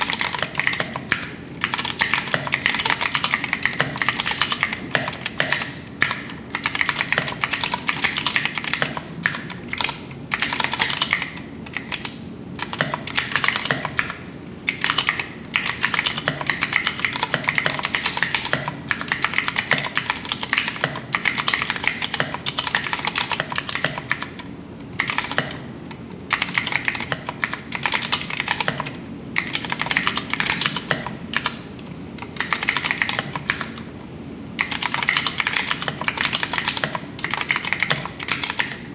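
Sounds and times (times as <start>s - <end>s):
mechanical keyboard typing: 0.0s - 25.7s, 26.3s - 33.9s, 34.6s - 38.9s.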